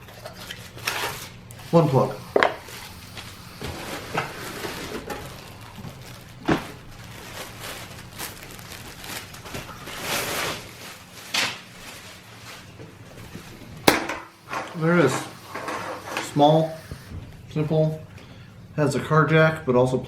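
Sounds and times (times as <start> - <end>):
packaging rustling: 0.0 - 16.1.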